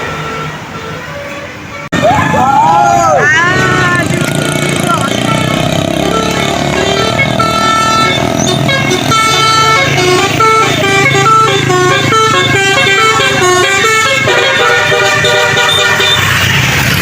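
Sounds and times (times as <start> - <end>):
musical air horn playing a tune: 5.1 - 16.3.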